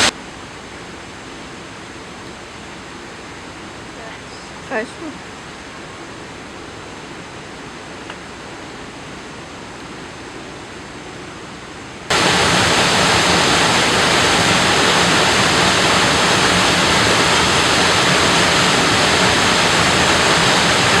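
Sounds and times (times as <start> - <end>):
waterfall rushing: 2.4 - 5.9, 12.1 - 21.0.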